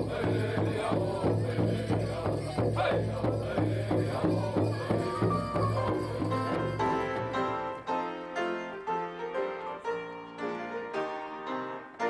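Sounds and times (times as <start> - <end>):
drum beaten steadily: 0.0 - 7.4
people singing: 0.0 - 7.9.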